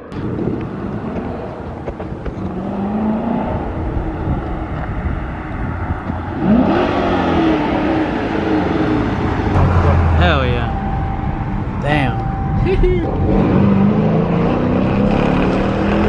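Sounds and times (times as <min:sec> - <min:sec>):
car exhaust rumble and revving: 0:00.0 - 0:16.0.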